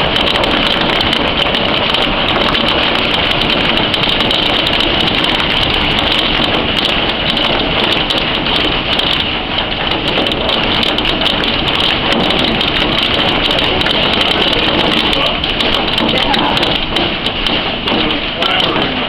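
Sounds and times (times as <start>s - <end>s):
hail pelting a patio: 0.0s - 19.0s.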